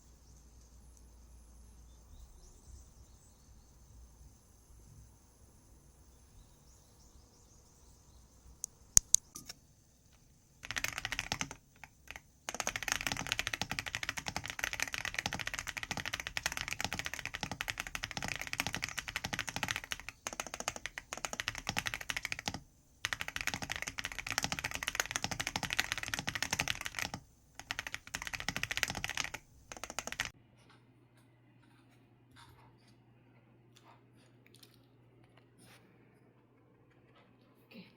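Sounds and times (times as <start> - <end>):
typing on computer keyboard: 10.6 - 30.4.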